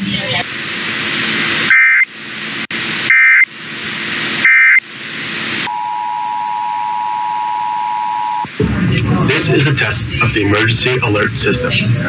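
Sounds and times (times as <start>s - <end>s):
radio hiss: 0.0s - 12.0s
two-tone attention signal: 5.7s - 8.5s.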